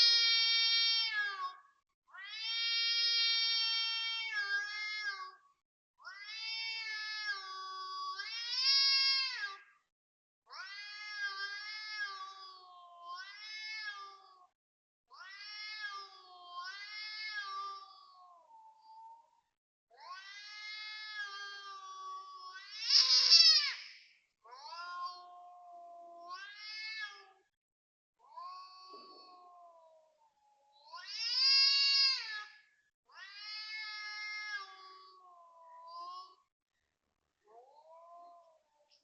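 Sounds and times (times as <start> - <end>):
cat yowling: 15.1 - 19.0, 20.0 - 23.8, 24.5 - 27.4, 33.1 - 36.3, 37.5 - 38.9.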